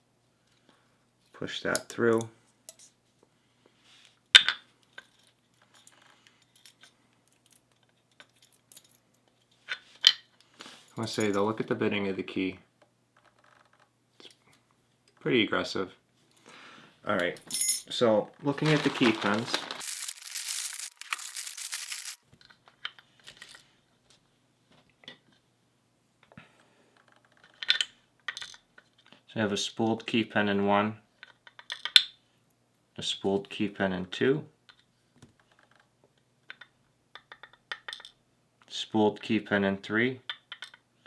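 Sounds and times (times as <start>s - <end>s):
scratchy rustle: 18.6s - 22.2s.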